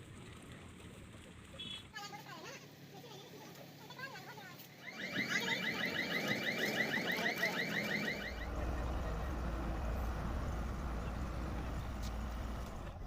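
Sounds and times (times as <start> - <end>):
electronic chirping alarm: 4.8 - 9.9
steady low rumble: 8.3 - 13.0.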